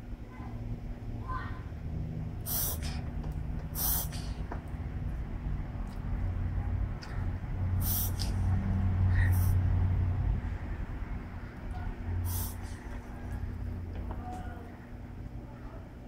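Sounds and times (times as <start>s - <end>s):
pet sneezing: 2.4s - 3.1s, 3.7s - 4.4s, 7.8s - 8.5s, 12.2s - 12.9s.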